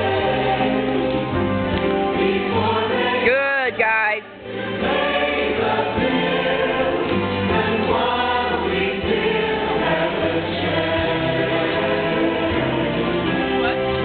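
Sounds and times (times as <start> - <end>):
choir singing in parts: 0.0 - 14.0.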